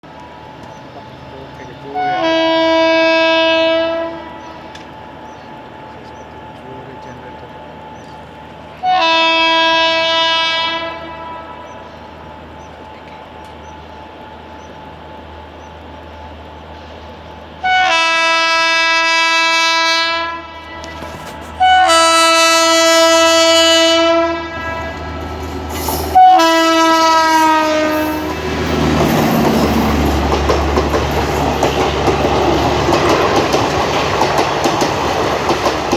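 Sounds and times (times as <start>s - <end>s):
train coaches clattering past: 0.0s - 35.9s
locomotive horn blasts: 1.9s - 4.8s, 8.8s - 11.8s, 17.6s - 25.3s, 25.9s - 28.6s.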